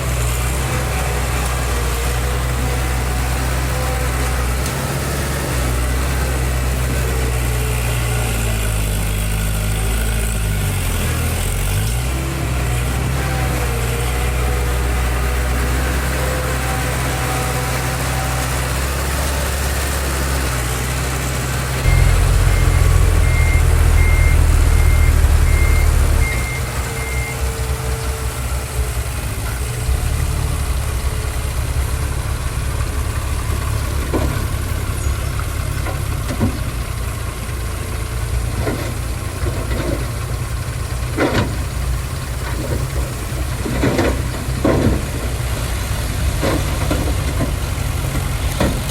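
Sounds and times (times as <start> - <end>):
heavy diesel engines running: 0.0 - 48.9
reversing alarm beeps: 21.9 - 27.4.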